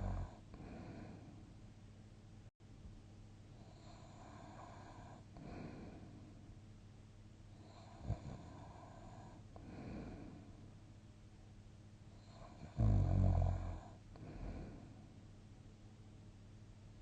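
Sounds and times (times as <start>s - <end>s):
person breathing softly in sleep: 0.0s - 1.4s, 3.6s - 6.4s, 7.5s - 10.6s, 13.7s - 15.1s.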